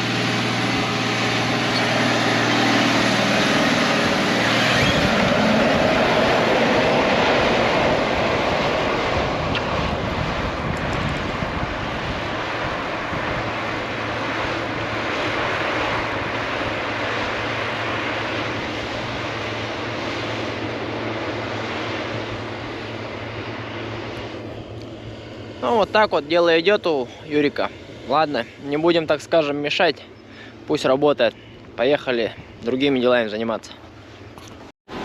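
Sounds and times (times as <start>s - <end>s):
tractor engine running: 0.0s - 7.3s.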